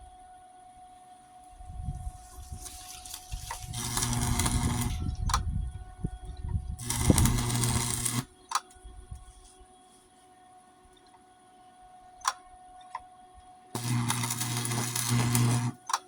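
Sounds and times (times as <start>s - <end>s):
arc welder crackling and buzzing: 2.1s - 5.5s, 6.8s - 8.7s, 13.7s - 16.0s.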